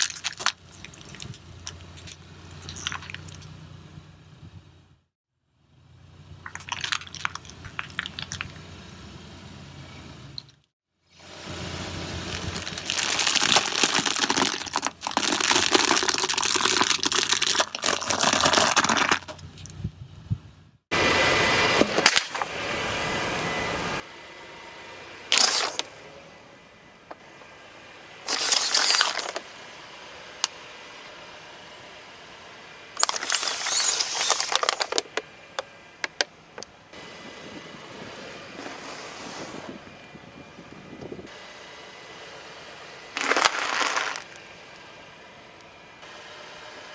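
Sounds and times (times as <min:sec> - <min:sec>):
objects crunching under car tyres: 0:00.0 - 0:03.6, 0:06.4 - 0:08.7, 0:12.2 - 0:19.8, 0:21.8 - 0:22.6, 0:25.3 - 0:26.0, 0:28.3 - 0:29.6, 0:33.0 - 0:36.7, 0:38.5 - 0:39.9, 0:43.2 - 0:44.5.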